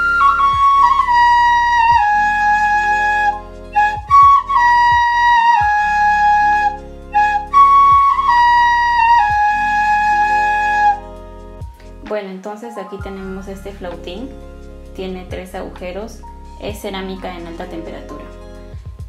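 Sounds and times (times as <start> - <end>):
ceramic flute playing: 0.0 - 11.6.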